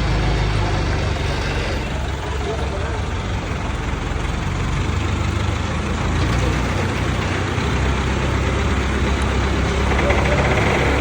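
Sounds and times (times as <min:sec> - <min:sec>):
heavy engine idling: 0:00.0 - 0:11.0.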